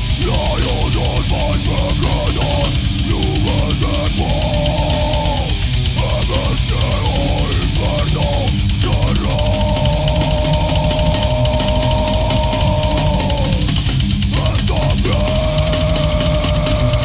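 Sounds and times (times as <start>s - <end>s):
dense drums: 0.0s - 17.0s
distorted metal guitar: 0.0s - 17.0s.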